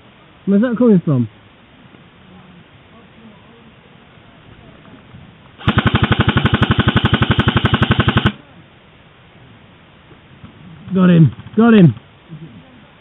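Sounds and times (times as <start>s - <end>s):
airsoft gun full-auto burst: 5.6s - 8.4s.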